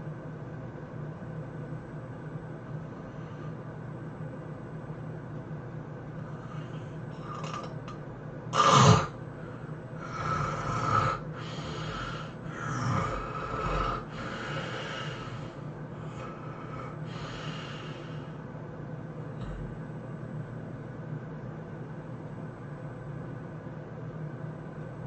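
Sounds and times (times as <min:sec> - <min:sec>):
steady low hum: 0:00.0 - 0:25.0
person snoring: 0:06.3 - 0:07.8, 0:08.6 - 0:09.2, 0:10.0 - 0:18.3
loud snort: 0:08.6 - 0:09.2, 0:10.0 - 0:16.2.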